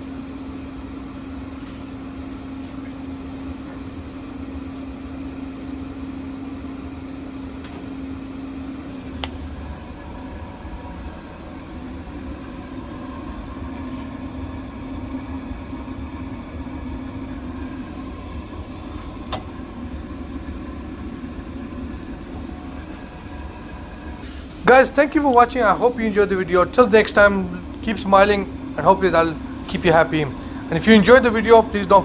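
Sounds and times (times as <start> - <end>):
gas boiler humming: 0.0 - 32.0
boiler clicks: 9.0 - 24.1, 27.1 - 30.7.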